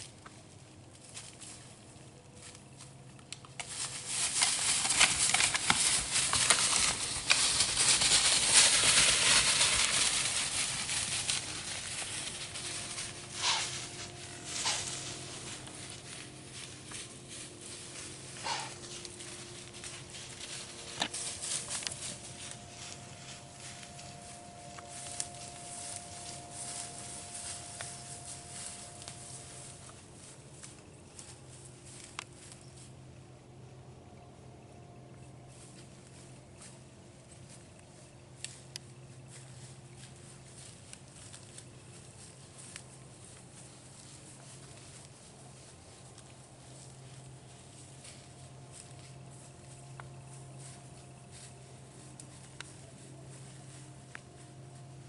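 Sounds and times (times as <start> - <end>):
crackling and rustling in dry leaves: 0.0 - 33.8, 35.2 - 55.0.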